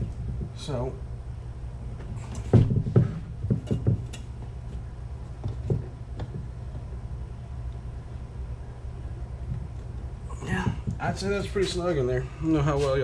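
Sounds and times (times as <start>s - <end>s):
steady low hum: 0.0s - 13.0s
short knocks and bumps: 2.0s - 6.9s.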